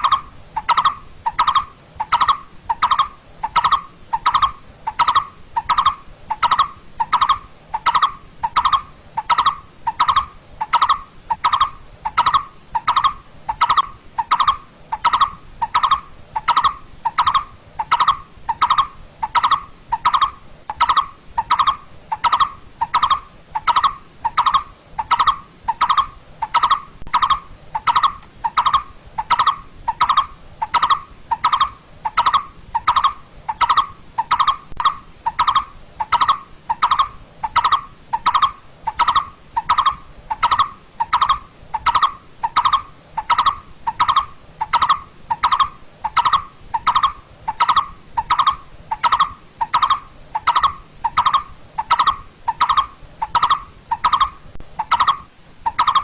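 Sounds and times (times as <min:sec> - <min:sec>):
bird repeating tuk call: 0:00.0 - 0:56.0.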